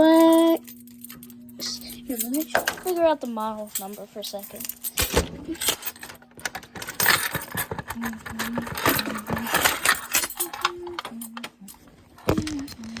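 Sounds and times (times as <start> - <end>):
metal keys jangling: 0.0 - 6.2, 6.8 - 11.8.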